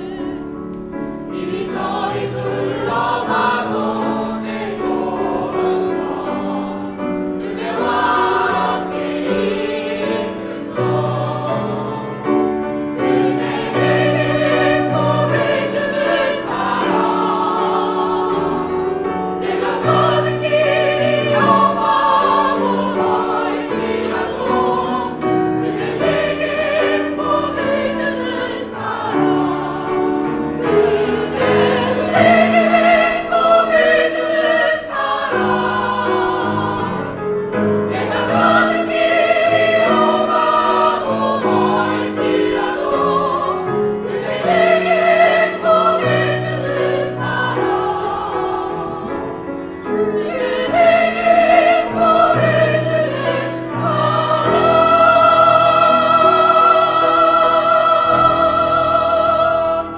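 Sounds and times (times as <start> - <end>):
choir singing: 0.0 - 59.9.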